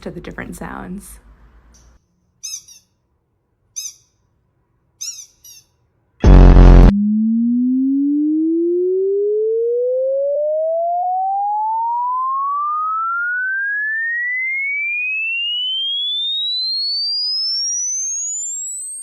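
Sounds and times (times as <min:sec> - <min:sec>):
rising electronic tone: 0:06.2 - 0:16.2.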